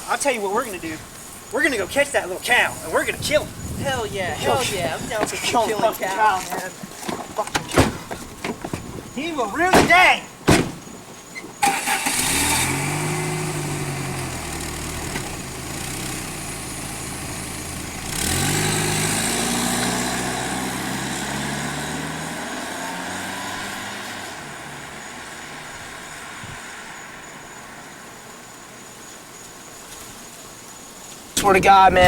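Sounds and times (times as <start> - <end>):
car engine revving: 11.6 - 27.5.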